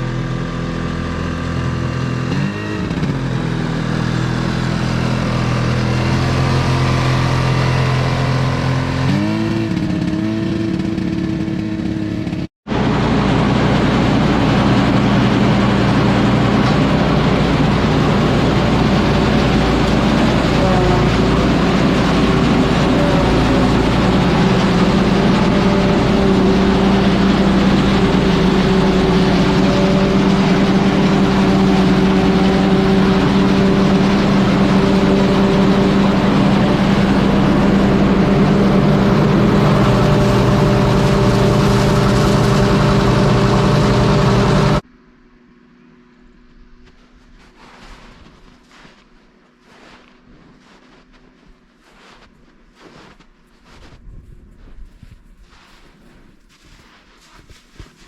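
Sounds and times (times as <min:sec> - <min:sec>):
tractor engine running: 0:00.0 - 0:44.8.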